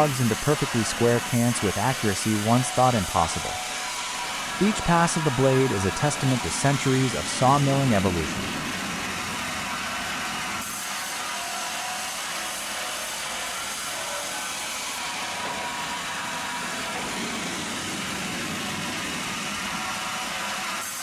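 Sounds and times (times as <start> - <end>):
sawmill machinery whirring: 0.0 - 21.0.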